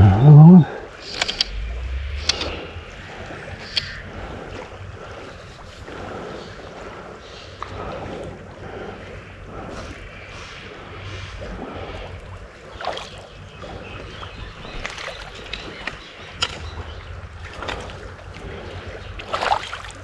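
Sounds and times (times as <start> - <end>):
wind rumbling on microphone: 0.0 - 20.0
sharp clicks: 1.0 - 2.8, 3.6 - 4.0.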